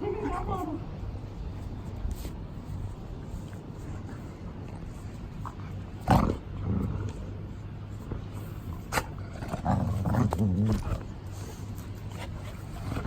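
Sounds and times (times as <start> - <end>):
dogs growling: 3.9 - 13.0.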